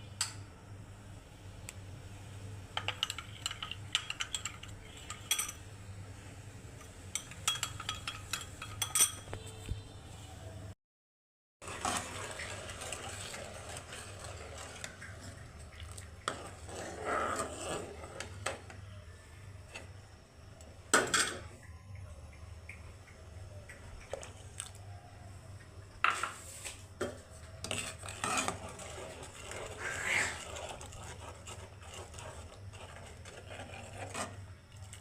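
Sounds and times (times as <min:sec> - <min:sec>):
utensils clinking on dishes: 0:02.8 - 0:05.6, 0:07.1 - 0:09.5.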